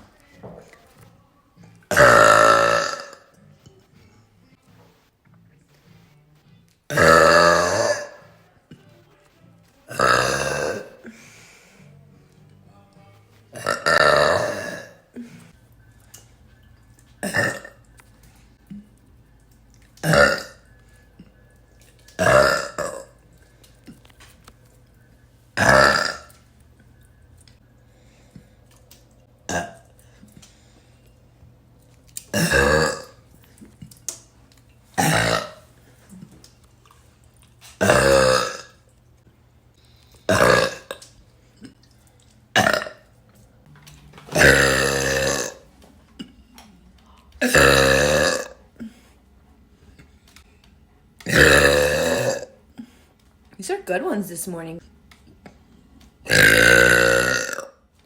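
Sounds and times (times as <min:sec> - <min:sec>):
woman burping: 0:01.9 - 0:03.3, 0:06.9 - 0:08.3, 0:09.9 - 0:11.2, 0:13.6 - 0:15.5, 0:17.2 - 0:17.8, 0:20.0 - 0:20.7, 0:22.2 - 0:23.2, 0:25.6 - 0:26.4, 0:29.5 - 0:29.9, 0:32.2 - 0:33.2, 0:35.0 - 0:36.4, 0:37.8 - 0:38.8, 0:40.3 - 0:41.0, 0:42.5 - 0:43.0, 0:44.3 - 0:45.6, 0:47.4 - 0:49.0, 0:51.2 - 0:52.9, 0:56.2 - 0:57.8.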